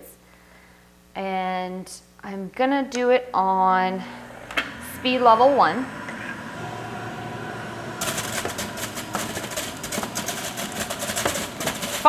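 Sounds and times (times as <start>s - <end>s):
juicer motor hum: 3.4s - 12.0s
fruit grinding in juicer: 3.8s - 12.0s.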